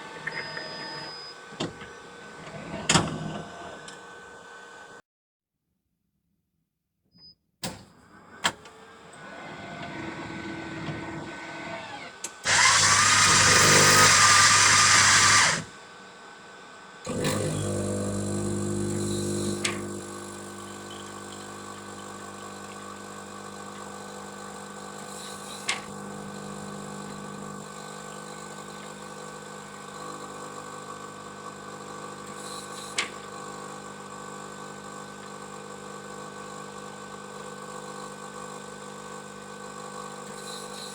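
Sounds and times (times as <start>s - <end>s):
coffee machine motor hum: 8.8s - 40.9s
harsh grinder whirring: 9.1s - 15.8s, 17.0s - 38.4s
pump hum: 17.1s - 25.3s, 25.9s - 35.6s
coffee machine clicks: 18.9s - 22.9s.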